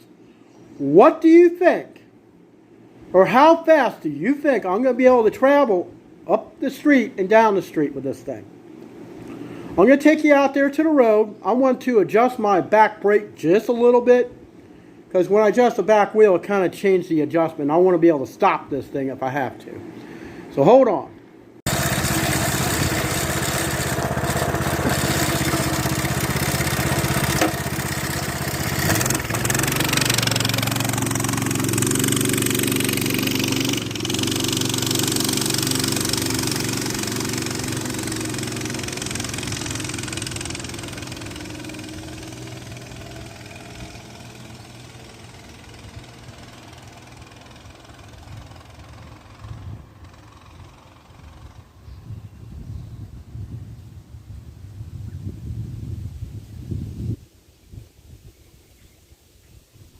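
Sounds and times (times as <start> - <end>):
small motorbike engine running: 21.7 - 52.0.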